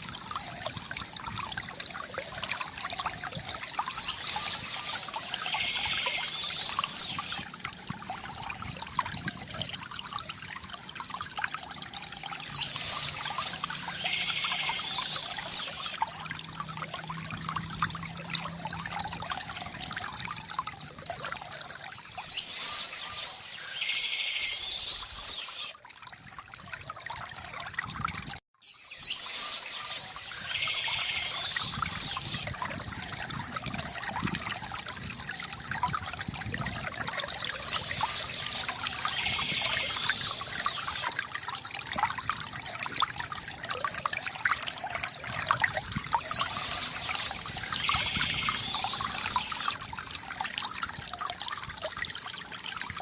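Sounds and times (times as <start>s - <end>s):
stream water trickling: 0.0s - 53.0s
songbird singing: 3.8s - 7.4s, 12.4s - 16.0s, 22.1s - 25.7s, 28.6s - 32.5s, 37.5s - 41.1s, 46.2s - 49.8s.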